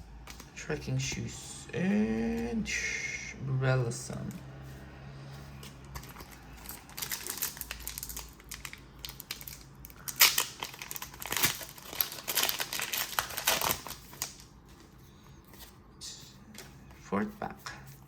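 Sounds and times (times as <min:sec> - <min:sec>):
foil wrapper crinkling: 0:05.9 - 0:14.5.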